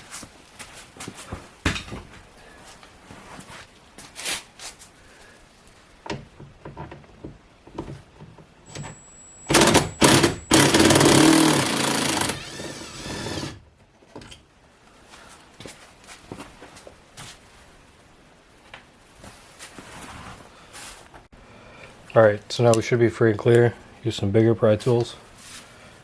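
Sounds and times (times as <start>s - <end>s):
power driver whirring: 8.7s - 13.6s.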